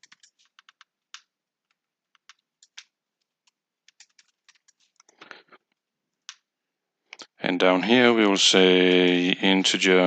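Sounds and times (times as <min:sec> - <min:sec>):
faint keyboard typing: 0:00.0 - 0:07.4.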